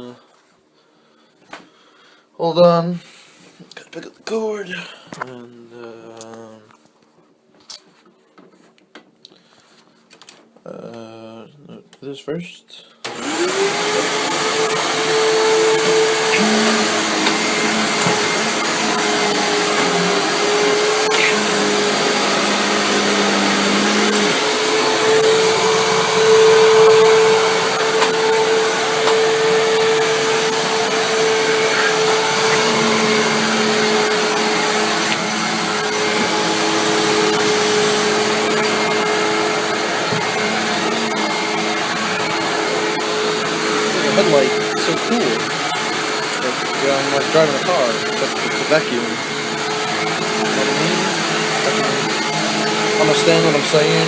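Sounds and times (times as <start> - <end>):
vacuum cleaner running: 13.0 - 54.0.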